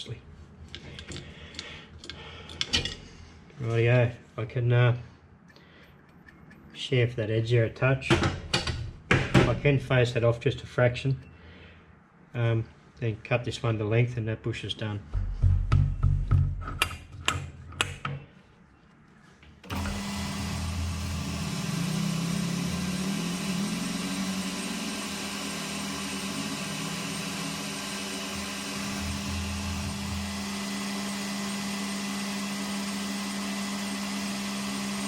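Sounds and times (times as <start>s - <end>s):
metal lathe running: 19.7s - 35.0s.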